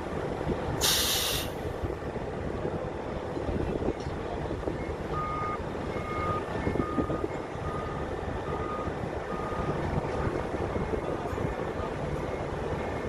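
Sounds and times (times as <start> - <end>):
diesel engine rumble: 0.0 - 13.0
reversing alarm beeping: 4.8 - 11.1.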